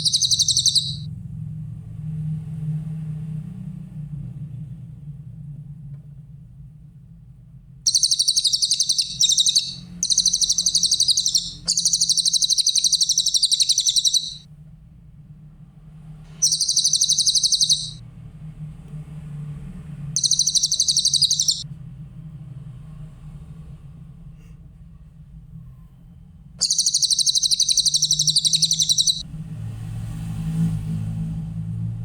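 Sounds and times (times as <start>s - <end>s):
bird trilling high-pitched: 0.0s - 1.1s, 7.9s - 14.4s, 16.4s - 18.0s, 20.2s - 21.6s, 26.6s - 29.2s.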